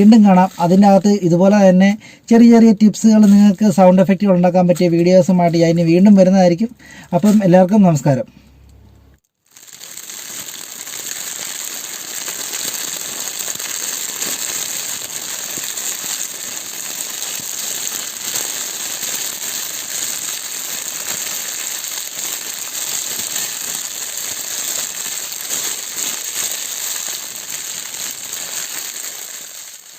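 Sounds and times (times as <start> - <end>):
plastic bag crinkling: 9.3 - 29.9.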